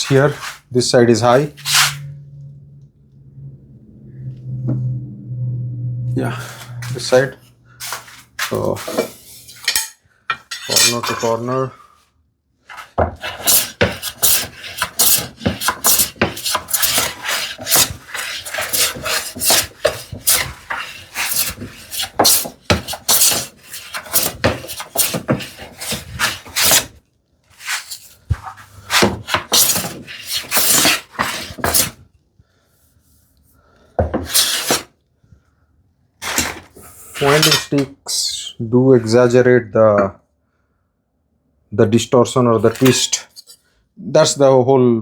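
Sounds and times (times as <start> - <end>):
hand plane strokes on wood: 0.0 - 2.2, 6.6 - 9.5, 12.7 - 32.0, 34.1 - 34.9, 36.2 - 37.9.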